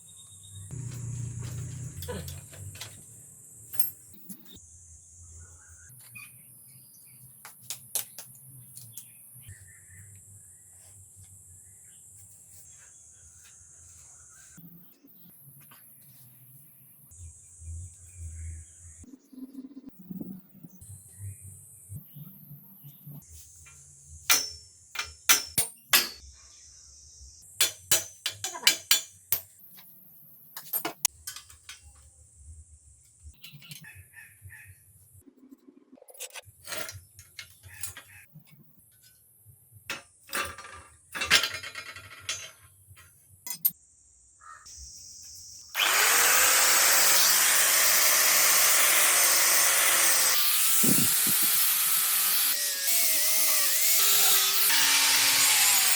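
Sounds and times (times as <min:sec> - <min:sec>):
power tool running: 0:00.7 - 0:02.7, 0:45.8 - 0:55.9.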